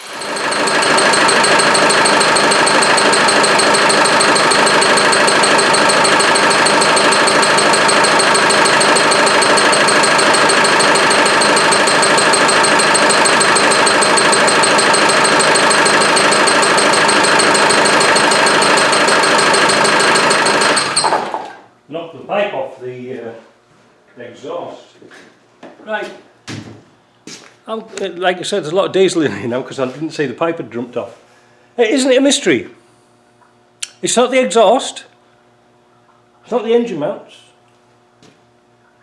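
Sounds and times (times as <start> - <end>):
rhythmic chirping from engine: 0.0 - 21.4.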